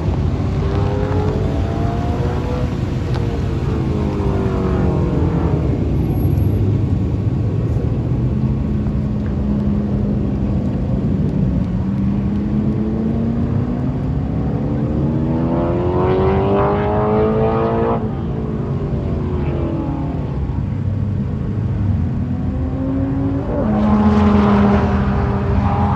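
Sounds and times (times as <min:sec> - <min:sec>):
jet engine rumble with whine: 0:00.0 - 0:12.7.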